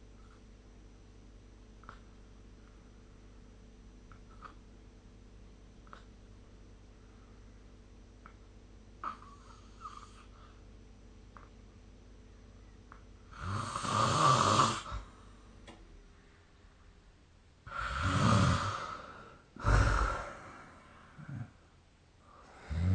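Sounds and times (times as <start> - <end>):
quiet breathing: 6.9 - 7.8, 9.0 - 10.8, 17.6 - 22.9
person snoring: 13.3 - 15.1, 17.7 - 21.6, 22.3 - 22.9.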